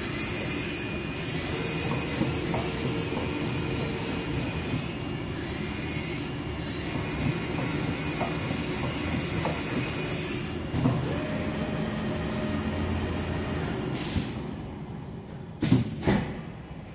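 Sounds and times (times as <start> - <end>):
cloth cutting machine running: 10.7 - 13.8.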